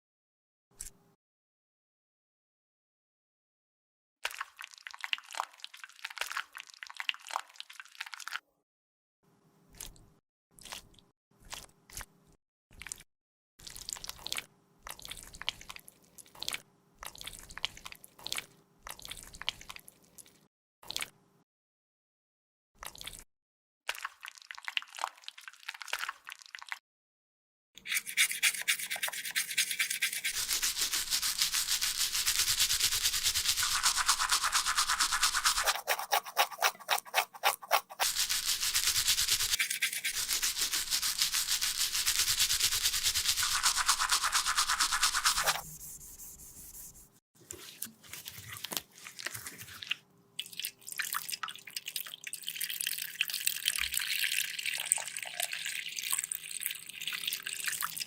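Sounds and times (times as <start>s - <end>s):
tool scraping cosmetic product: 27.8s - 47.2s.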